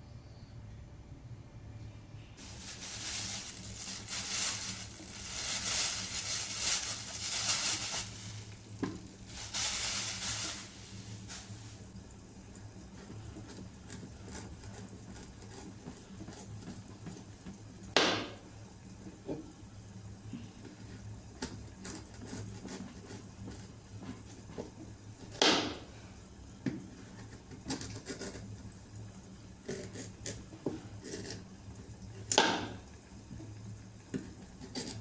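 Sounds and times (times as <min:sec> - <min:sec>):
food sizzling in hot oil: 0:02.4 - 0:12.4.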